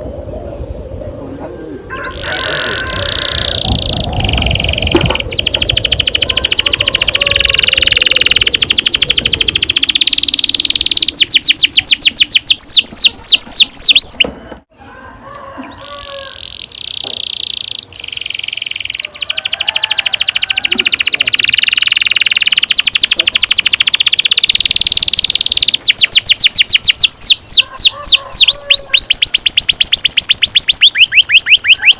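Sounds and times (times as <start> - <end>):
canary singing trills: 1.6 - 14.6, 15.7 - 31.9.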